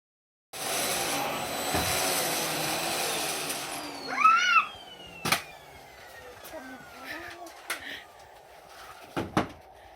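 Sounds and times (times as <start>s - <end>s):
vacuum cleaner motor whine: 0.6s - 9.2s
toddler squealing: 4.0s - 4.8s.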